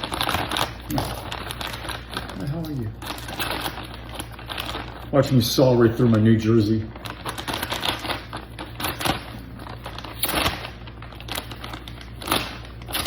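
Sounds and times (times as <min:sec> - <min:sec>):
packaging crinkling and scraping: 0:00.0 - 0:13.0.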